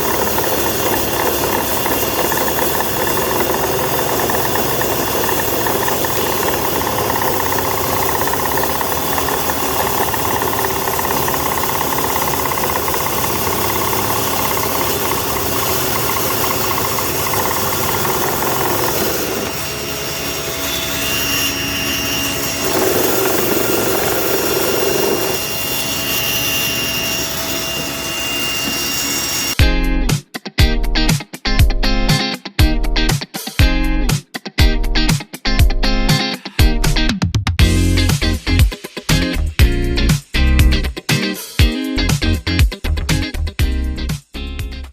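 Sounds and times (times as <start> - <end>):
power tools running: 0.0 - 29.6.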